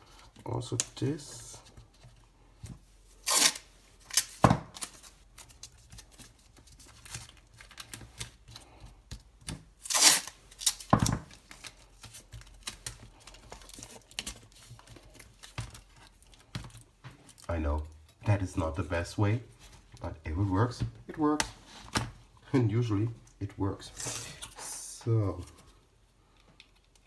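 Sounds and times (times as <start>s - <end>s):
adhesive tape ripping: 3.2s - 5.0s, 9.8s - 10.9s.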